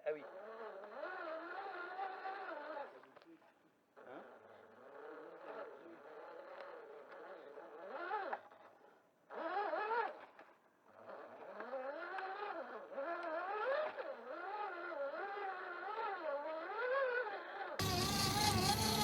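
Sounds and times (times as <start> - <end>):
electric motor whining: 11.1 - 19.0.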